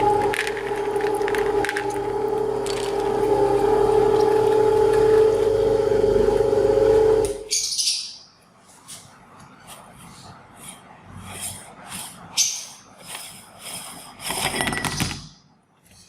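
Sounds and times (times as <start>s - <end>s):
meat grinder motor whining: 0.0s - 7.4s.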